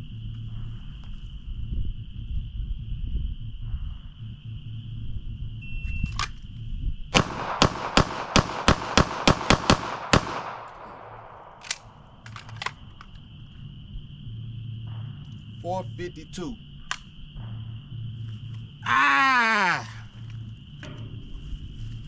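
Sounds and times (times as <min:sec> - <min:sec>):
pistol shots: 0:07.2 - 0:13.0.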